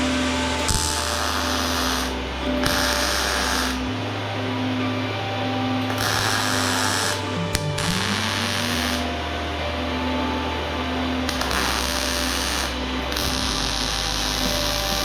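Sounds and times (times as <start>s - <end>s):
electric arc welding crackle: 0.0s - 4.1s, 5.8s - 9.2s, 11.2s - 15.0s
background music with bass line: 0.0s - 15.0s.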